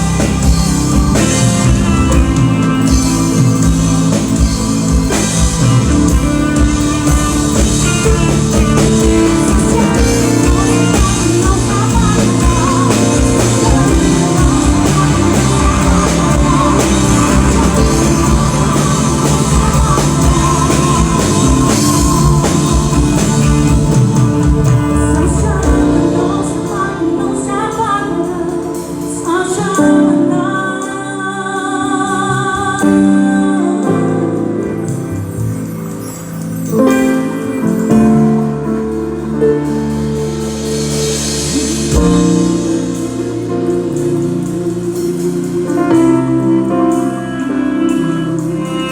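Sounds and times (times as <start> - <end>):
wavering melody line: 0.0 - 29.8
band music with drums bass guitar: 0.0 - 48.9.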